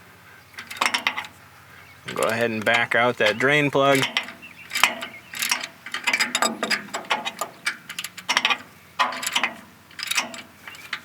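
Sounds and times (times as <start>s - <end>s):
ratchet wrench clicking: 3.9s - 10.4s.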